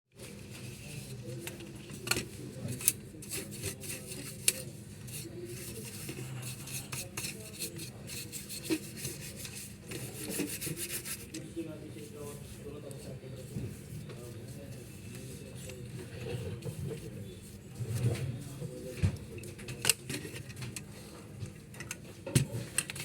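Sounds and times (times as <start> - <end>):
rubbing and scraping: 2.7 - 11.4.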